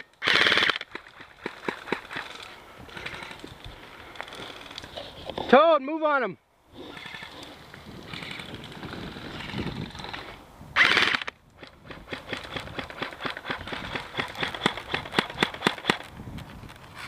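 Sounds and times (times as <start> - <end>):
airsoft guns firing: 10.8 - 16.1.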